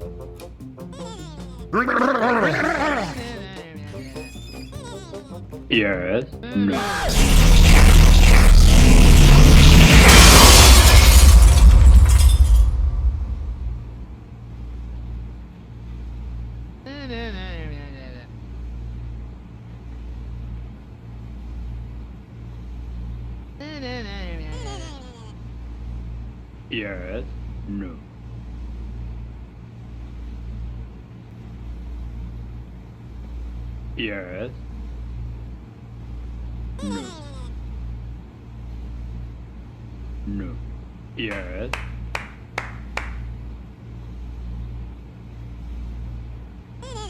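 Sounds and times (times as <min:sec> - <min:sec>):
loud noisy rumble: 0:06.8 - 0:14.8
low hum: 0:06.8 - 0:15.3.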